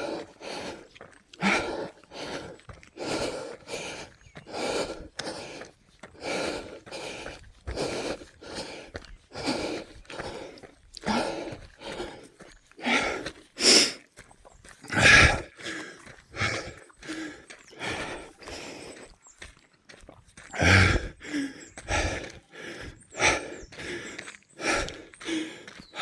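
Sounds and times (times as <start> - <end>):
person panting heavily: 0.0 - 26.0.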